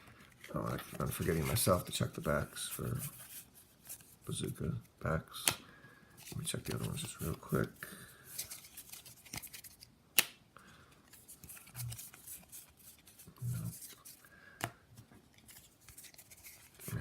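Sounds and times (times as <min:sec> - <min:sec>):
foil wrappers crinkling: 0:06.2 - 0:09.9, 0:11.1 - 0:14.3, 0:15.4 - 0:17.0.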